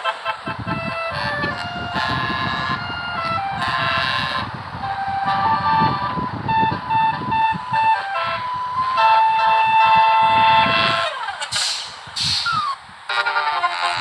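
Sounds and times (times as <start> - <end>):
multi-tone air horn playing a tune: 0.0 - 14.0
air hisses: 11.5 - 13.0.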